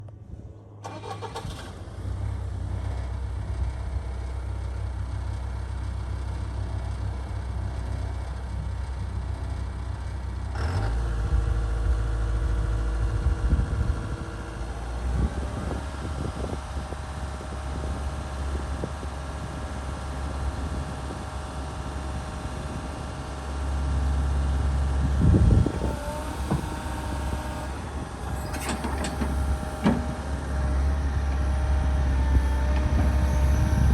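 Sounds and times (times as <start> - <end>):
excavator diesel engine running: 0.8 - 33.9.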